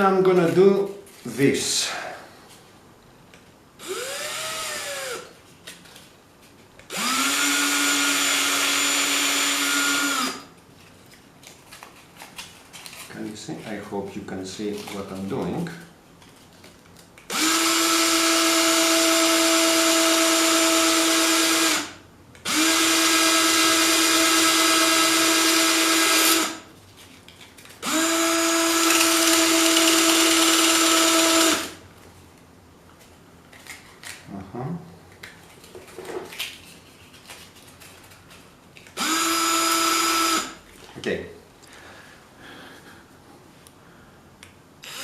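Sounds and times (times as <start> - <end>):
small power tool motor whine: 3.8 - 5.3, 6.9 - 10.5, 17.3 - 26.6, 27.8 - 31.8, 39.0 - 40.6.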